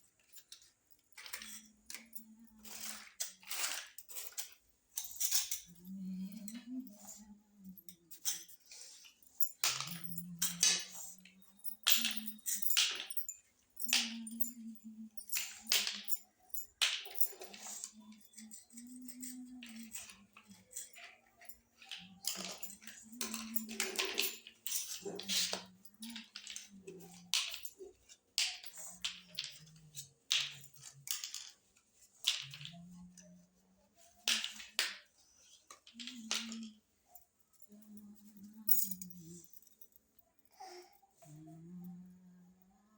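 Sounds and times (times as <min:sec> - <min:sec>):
plastic toy pieces clicking: 0:15.2 - 0:31.6.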